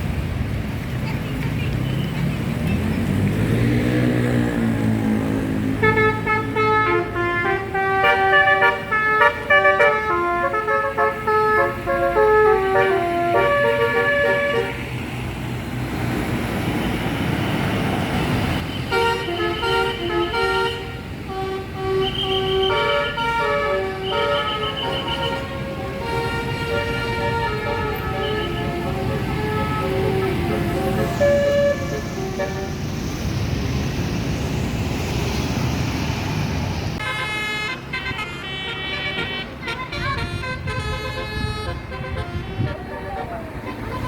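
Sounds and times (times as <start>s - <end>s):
bus engine and road noise: 0.0s - 44.0s
bus musical horn playing a tune: 5.7s - 15.0s, 18.7s - 32.9s, 37.0s - 44.0s.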